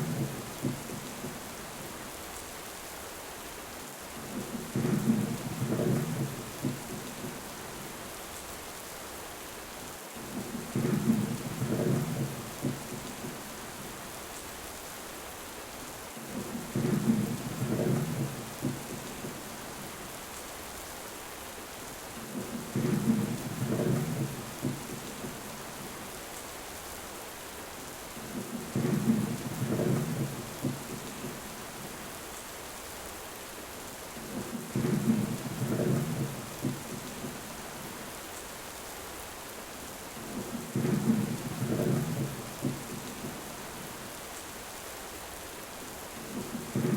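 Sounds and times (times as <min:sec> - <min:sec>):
rain hiss: 0:00.0 - 0:46.9.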